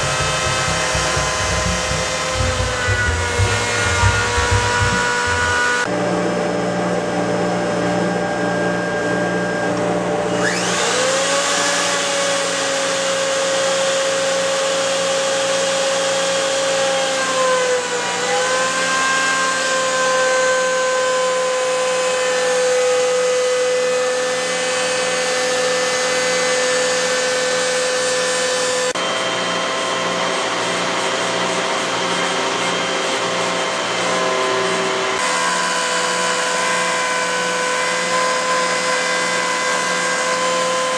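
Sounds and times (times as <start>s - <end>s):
low hum: 0.0s - 5.9s
router spindle whine: 0.0s - 40.9s.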